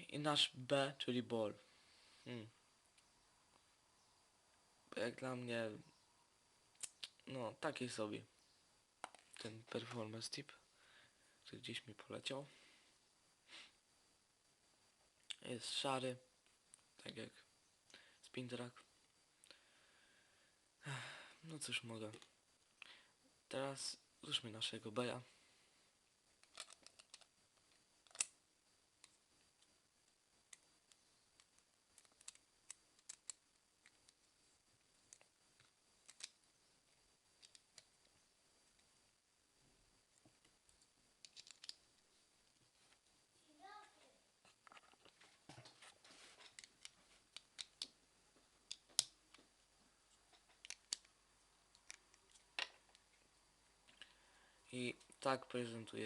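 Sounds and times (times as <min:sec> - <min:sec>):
plastic toy parts clicking: 0:26.4 - 0:27.3, 0:28.0 - 0:28.4, 0:31.4 - 0:34.2, 0:36.0 - 0:36.4, 0:37.4 - 0:37.9, 0:41.2 - 0:41.8, 0:46.6 - 0:48.0, 0:48.7 - 0:49.1, 0:50.6 - 0:51.1
plastic and metal top clicking: 0:41.2 - 0:41.8.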